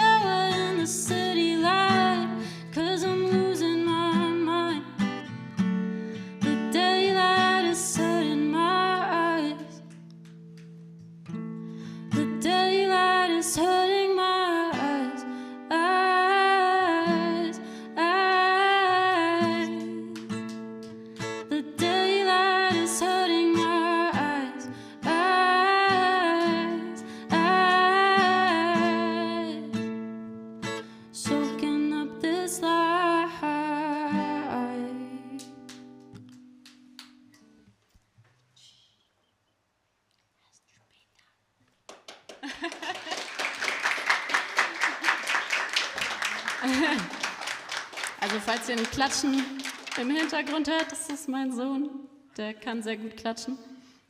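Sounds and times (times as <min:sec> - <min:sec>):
person singing: 0:31.2 - 0:35.5.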